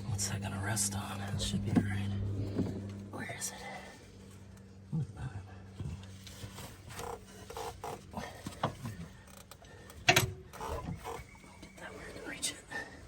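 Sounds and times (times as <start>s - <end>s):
metal hardware creaking and clicking: 6.7s - 11.8s.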